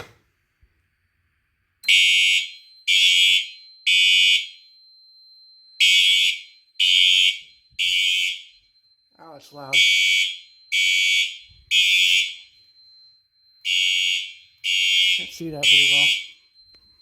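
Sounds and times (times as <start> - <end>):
fire alarm horn blasts: 1.8 - 4.8, 5.8 - 8.8, 9.6 - 12.7, 13.6 - 17.0.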